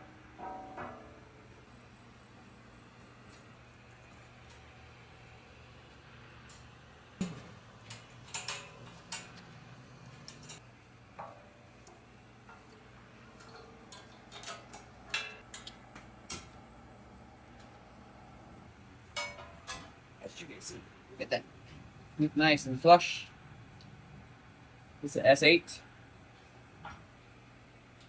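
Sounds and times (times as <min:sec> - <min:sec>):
faint steady hum: 0:00.0 - 0:28.0
metal clicks and knocks: 0:07.2 - 0:09.5, 0:13.4 - 0:16.5.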